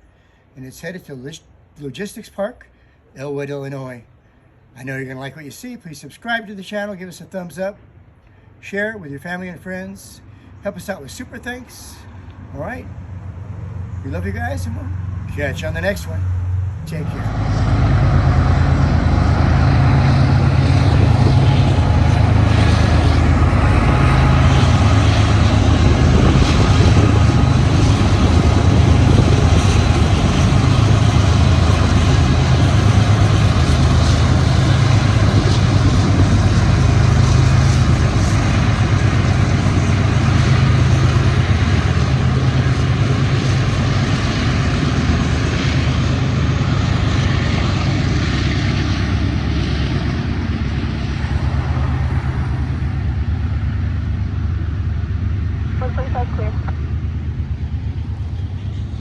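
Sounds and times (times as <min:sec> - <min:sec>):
locomotive engine drone: 0:00.0 - 0:59.0
rail and wheel noise: 0:00.0 - 0:59.0.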